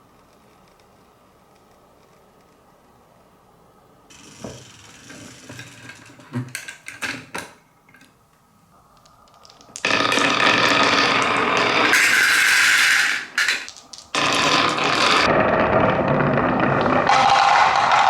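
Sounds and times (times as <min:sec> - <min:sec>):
marbles rattling down wooden track: 0:09.0 - 0:15.4.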